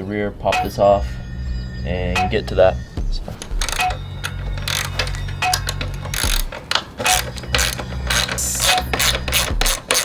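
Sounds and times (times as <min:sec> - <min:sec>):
socket ratchet clicking: 0:03.4 - 0:10.0.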